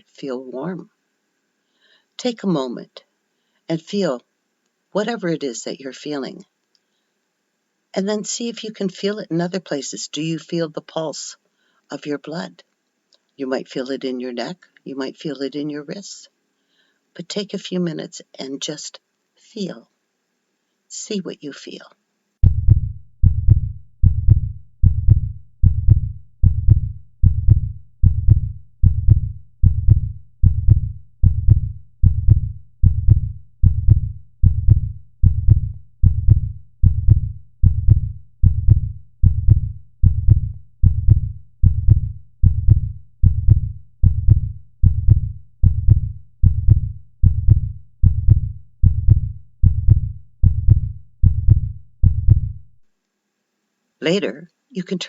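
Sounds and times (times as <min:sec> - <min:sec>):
heartbeat thuds: 0:22.4 - 0:52.8.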